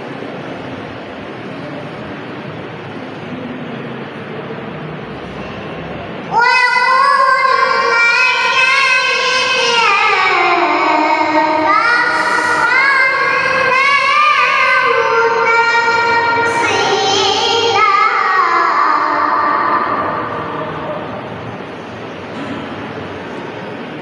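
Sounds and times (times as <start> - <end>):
girl reciting melodically: 6.2 - 21.9.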